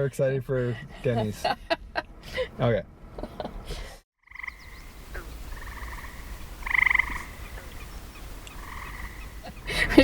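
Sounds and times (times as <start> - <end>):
frogs calling in pulsed trills: 4.2 - 9.7.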